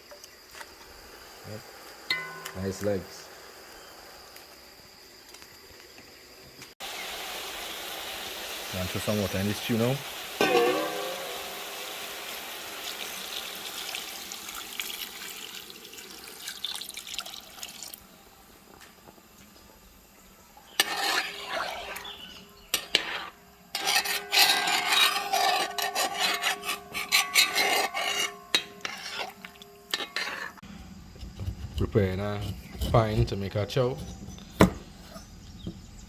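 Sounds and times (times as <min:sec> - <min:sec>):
water sizzling in hot pot: 0:06.8 - 0:18.1
rasping scrapes and knocks: 0:20.8 - 0:22.1, 0:22.7 - 0:30.6, 0:31.2 - 0:35.3.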